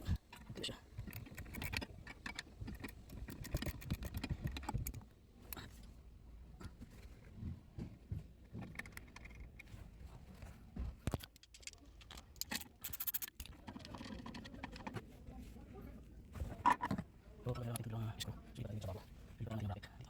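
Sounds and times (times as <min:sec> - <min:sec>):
small metal parts clicking: 0:00.2 - 0:05.6, 0:11.1 - 0:15.0.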